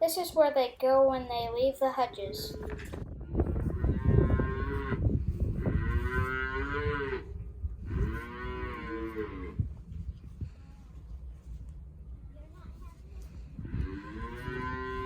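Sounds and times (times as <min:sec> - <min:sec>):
low rumbling background noise: 0:00.0 - 0:15.0
calves mooing: 0:03.7 - 0:05.0, 0:05.6 - 0:09.6, 0:13.8 - 0:15.0.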